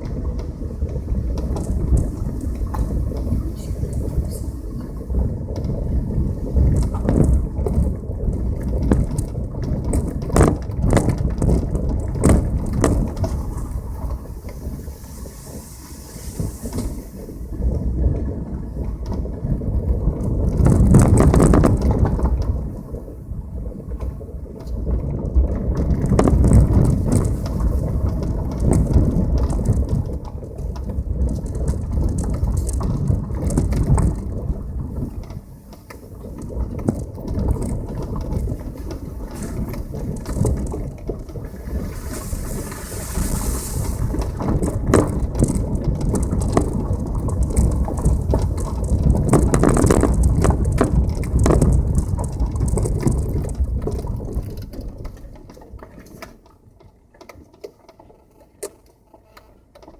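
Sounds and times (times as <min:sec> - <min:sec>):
tyres rumbling on rough road: 0:00.0 - 0:56.4
sharp knocks and crunches: 0:06.6 - 0:14.3, 0:25.7 - 0:35.4, 0:36.3 - 0:54.9.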